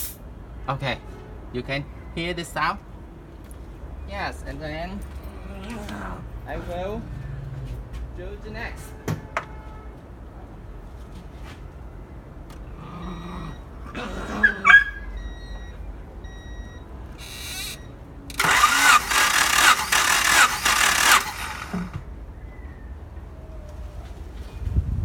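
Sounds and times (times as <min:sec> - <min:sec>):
brief hiss: 0:00.0 - 0:00.2
starter motor cranking engine: 0:17.2 - 0:22.0.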